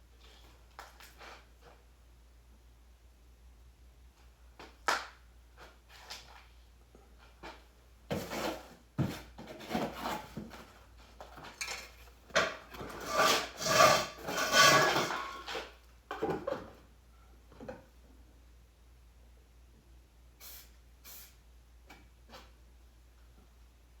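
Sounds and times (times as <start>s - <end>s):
rubbing and scraping on hard surface: 12.4s - 15.7s.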